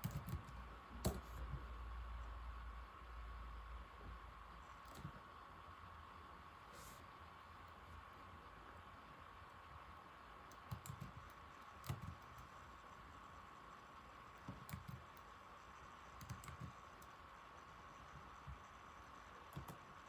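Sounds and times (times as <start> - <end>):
laptop keyboard typing: 0.0 - 1.4, 4.7 - 5.2, 10.5 - 12.7, 14.2 - 20.0
faint high hum: 0.0 - 20.0.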